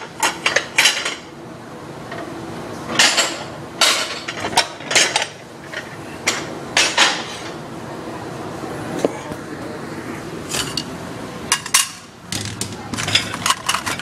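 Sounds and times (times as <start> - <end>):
steady background hiss: 0.0 - 14.0
dishes and cutlery clattering: 2.9 - 7.4, 11.5 - 14.0.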